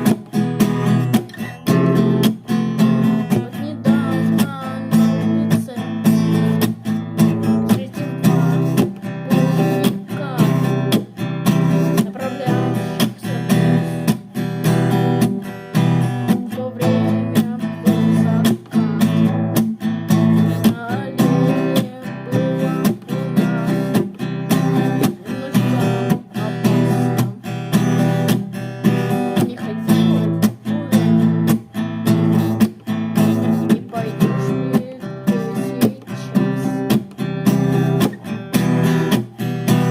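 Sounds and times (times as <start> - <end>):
acoustic guitar strumming: 0.0 - 39.9.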